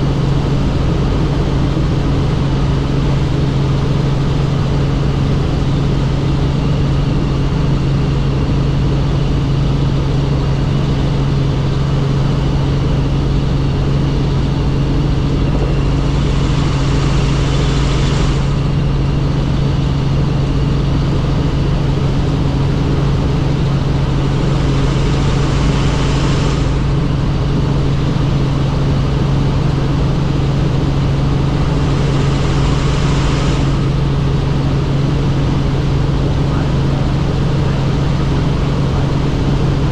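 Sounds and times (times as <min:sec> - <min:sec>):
helicopter engine and rotor drone: 0:00.0 - 0:39.9.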